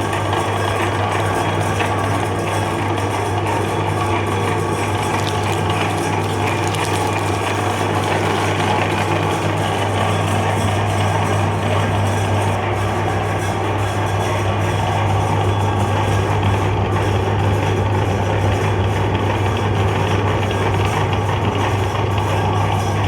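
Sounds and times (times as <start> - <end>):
meat grinder running: 4.9 - 10.0.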